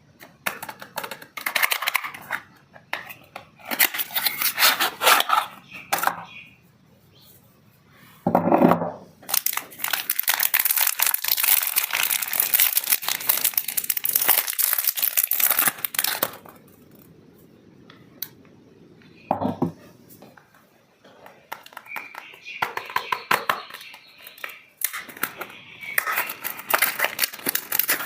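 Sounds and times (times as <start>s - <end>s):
wrapping crinkling and tearing: 9.2s - 16.9s, 24.8s - 28.0s.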